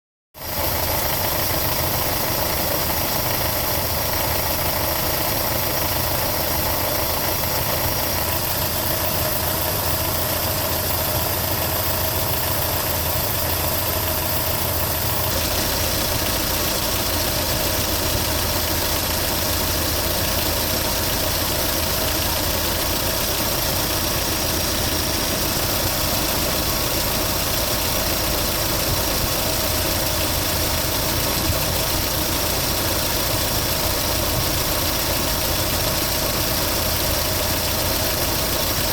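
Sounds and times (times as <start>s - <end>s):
pickup engine idling: 0.4s - 38.9s.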